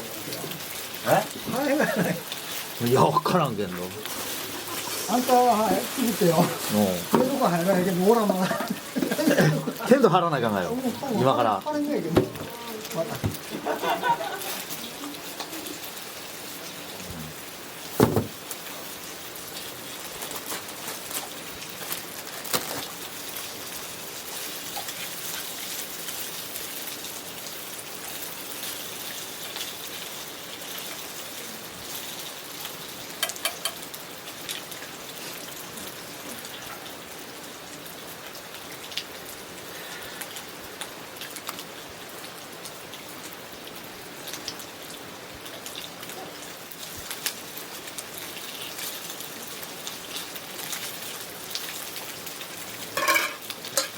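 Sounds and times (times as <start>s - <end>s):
steady rain falling: 0.0s - 53.9s
loud knock: 18.0s - 18.3s.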